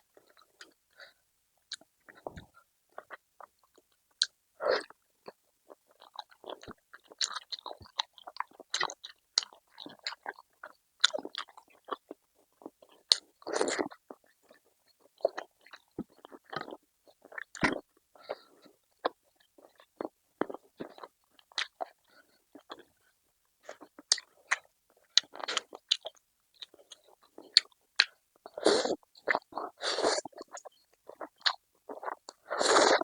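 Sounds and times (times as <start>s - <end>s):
person chewing crunchy food: 5.7s - 17.9s, 19.0s - 22.9s, 23.7s - 33.0s.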